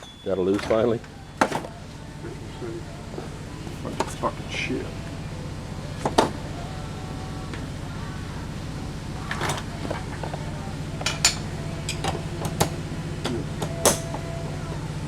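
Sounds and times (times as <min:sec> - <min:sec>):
metal parts and tools clanking: 0:11.0 - 0:14.2.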